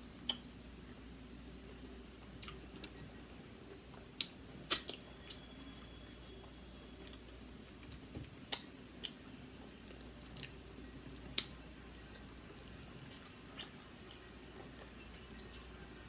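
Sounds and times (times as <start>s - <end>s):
wet eating clicks and smacks: 0.2s - 0.5s, 2.4s - 3.0s, 4.2s - 5.4s, 7.9s - 10.6s, 11.3s - 16.0s.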